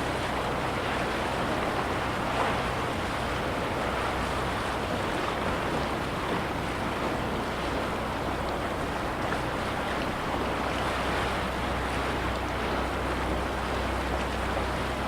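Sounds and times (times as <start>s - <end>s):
waves lapping against shore: 0.0s - 15.0s.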